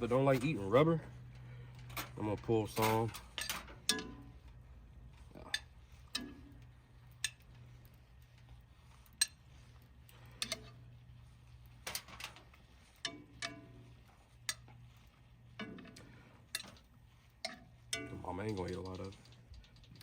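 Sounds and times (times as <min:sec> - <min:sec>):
low steady hum: 0:00.0 - 0:20.0
metal utensils clinking on dishes: 0:01.9 - 0:04.3, 0:10.3 - 0:10.8, 0:15.6 - 0:19.3.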